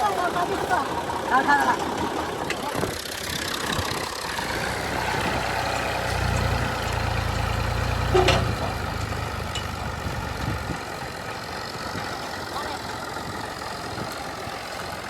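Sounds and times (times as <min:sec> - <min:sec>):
combine harvester diesel engine: 0:00.0 - 0:15.0
sharp metallic clank: 0:08.0 - 0:08.8.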